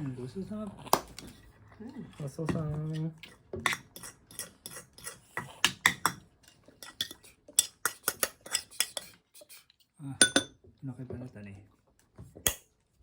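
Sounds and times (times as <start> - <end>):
cutlery and dishes clinking: 2.5 - 9.1, 10.2 - 10.6.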